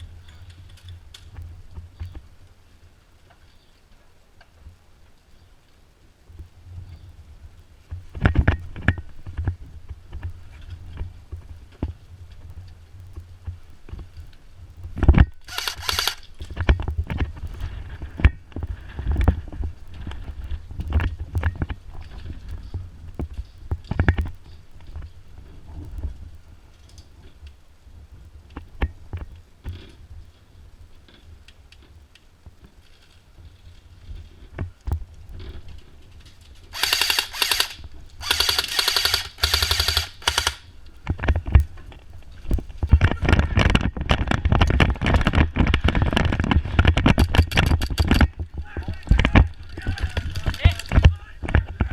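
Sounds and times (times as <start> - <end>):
dense rattling burst: 15.4 - 16.6, 36.7 - 40.7
knocks clicks and rustling of gear: 31.0 - 51.9.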